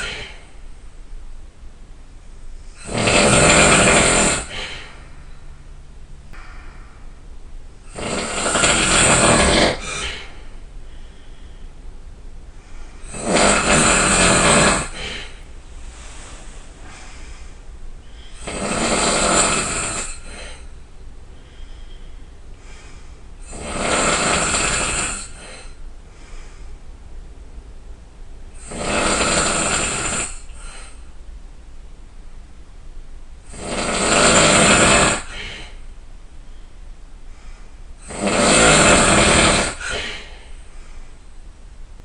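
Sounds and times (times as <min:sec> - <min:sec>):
person snoring loudly: 0:00.0 - 0:00.5, 0:02.8 - 0:05.0, 0:07.9 - 0:10.4, 0:13.0 - 0:15.4, 0:18.2 - 0:20.7, 0:23.4 - 0:25.7, 0:28.6 - 0:31.0, 0:33.5 - 0:35.8, 0:38.0 - 0:40.3
quiet breathing: 0:00.0 - 0:01.2, 0:01.9 - 0:23.6, 0:24.2 - 0:27.2, 0:29.9 - 0:31.4, 0:34.8 - 0:41.6.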